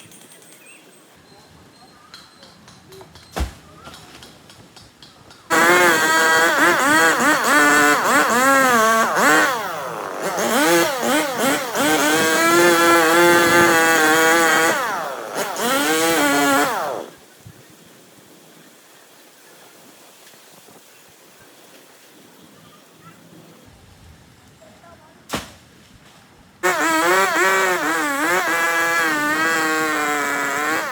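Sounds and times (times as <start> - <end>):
chainsaw revving: 5.5 - 17.2, 26.6 - 30.9.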